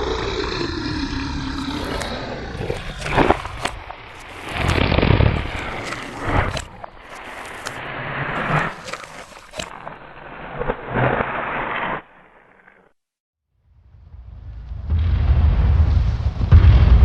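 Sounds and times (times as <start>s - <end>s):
monster roaring: 0.0s - 6.7s.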